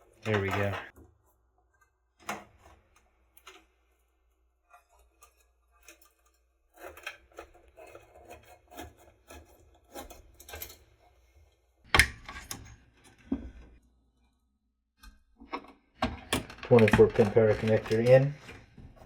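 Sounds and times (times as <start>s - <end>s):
cables rubbing and scraping: 0.0s - 0.9s, 16.3s - 19.0s.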